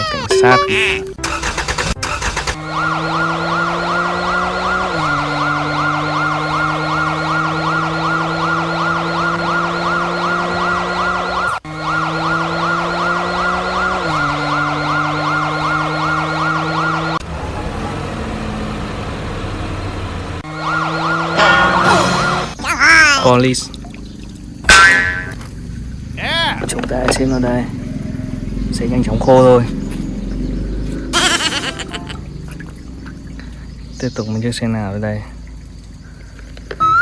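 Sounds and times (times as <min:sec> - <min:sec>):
toy siren warbling: 0:00.0 - 0:01.2, 0:02.4 - 0:17.2, 0:20.4 - 0:23.3, 0:26.2 - 0:26.7, 0:31.1 - 0:32.2, 0:36.8 - 0:37.0.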